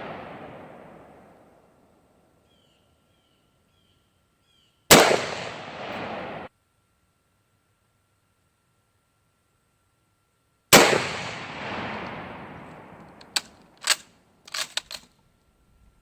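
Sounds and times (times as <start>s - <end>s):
rifle shot with echo: 0.0s - 1.6s, 4.9s - 6.5s, 10.7s - 13.2s.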